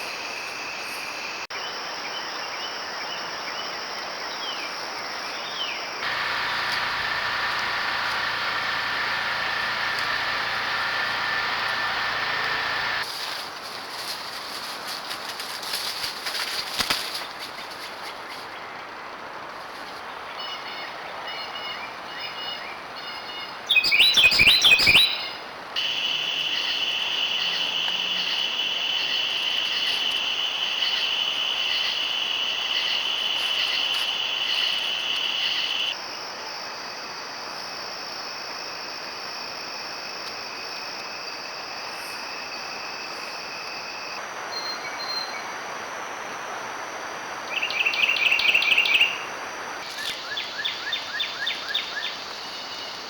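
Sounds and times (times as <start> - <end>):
crickets and insects chirring: 0.0 - 19.9, 23.7 - 53.0
rapid bird chirps: 23.7 - 36.0.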